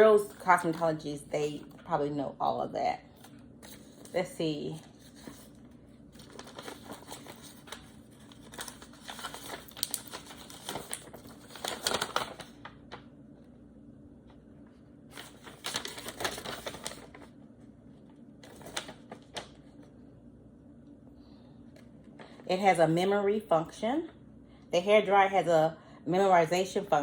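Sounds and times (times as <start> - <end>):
faint low hum: 0.0 - 27.0
paper rustling and crinkling: 3.1 - 13.0, 14.7 - 19.9.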